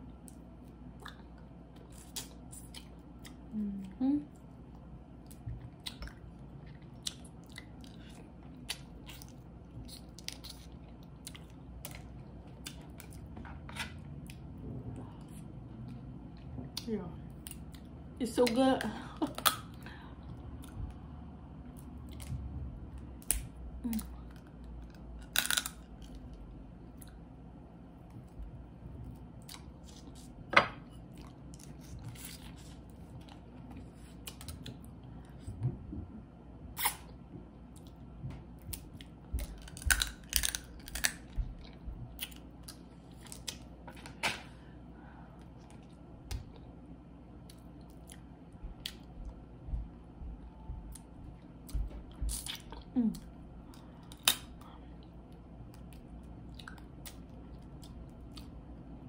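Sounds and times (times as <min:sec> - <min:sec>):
shells cracking and peeling: 0:25.2 - 0:26.1, 0:39.5 - 0:41.3
chewing: 0:55.0 - 0:58.6.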